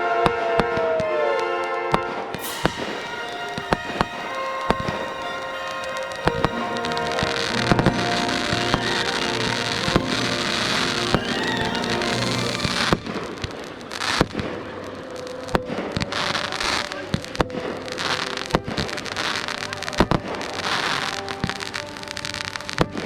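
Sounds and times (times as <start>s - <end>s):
firework crackling and hiss: 2.3s - 23.0s
firework shell bangs: 2.4s - 14.2s.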